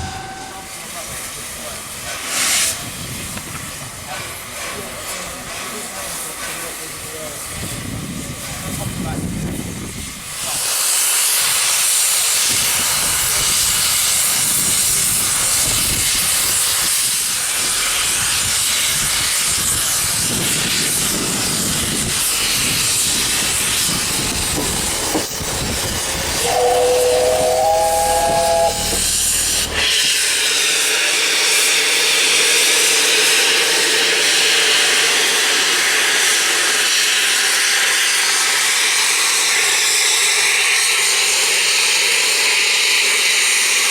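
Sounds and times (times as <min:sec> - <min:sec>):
three-note steam whistle: 0:00.0 - 0:01.2, 0:25.6 - 0:30.5
steam locomotive hissing steam: 0:00.0 - 0:43.9
low rumble: 0:17.4 - 0:19.2, 0:21.9 - 0:30.2.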